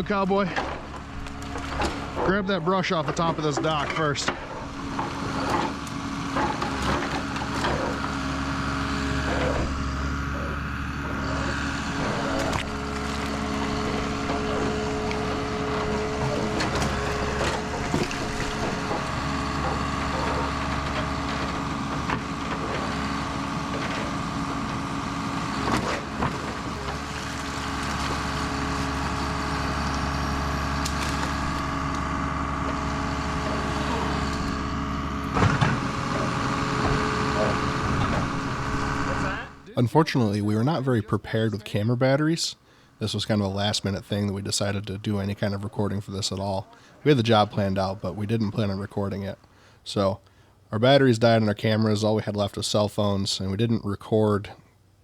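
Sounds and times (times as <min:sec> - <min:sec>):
engine humming with whine: 0:00.0 - 0:41.8
branches knocking and cracking: 0:11.2 - 0:39.3.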